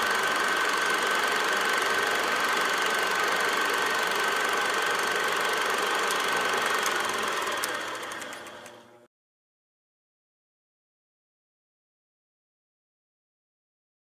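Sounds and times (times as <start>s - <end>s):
small machine whining: 0.0s - 9.1s.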